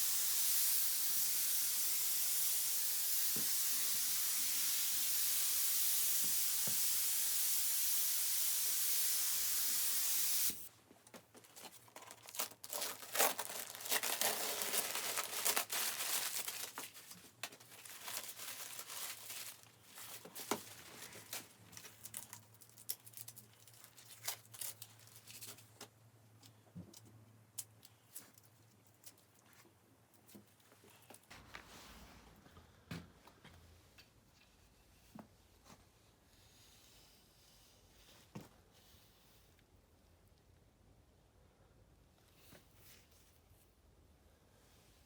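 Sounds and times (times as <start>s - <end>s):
steady spray hiss: 0.0s - 10.7s
tearing and crinkling clicks: 11.4s - 29.5s.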